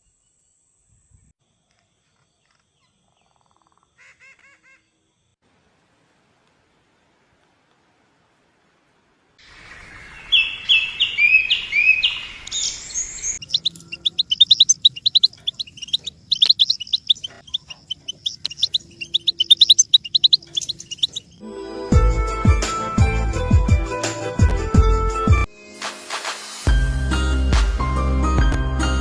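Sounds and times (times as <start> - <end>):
small birds chirping: 0.0 - 5.0, 9.6 - 21.4.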